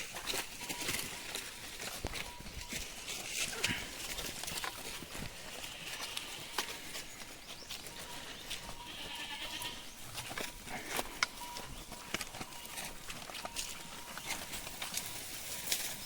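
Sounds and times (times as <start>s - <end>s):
goats bleating: 3.2s - 14.2s.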